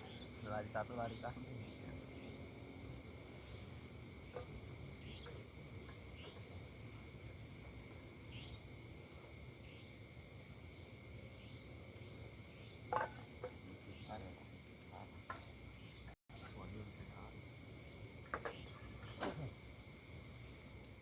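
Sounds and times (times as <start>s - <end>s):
cricket trills: 0.0s - 21.0s.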